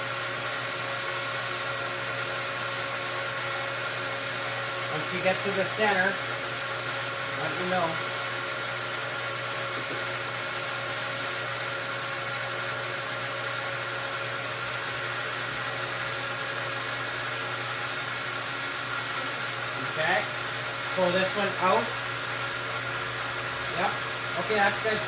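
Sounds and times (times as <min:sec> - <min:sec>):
metal lathe motor humming: 0:00.0 - 0:25.0.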